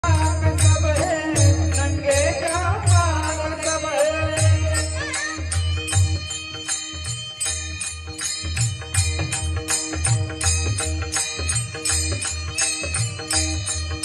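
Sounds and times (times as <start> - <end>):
person singing devotional song: 0.0 - 7.4
harmonium drone: 0.0 - 14.0
small hand cymbals clashing: 0.0 - 14.0.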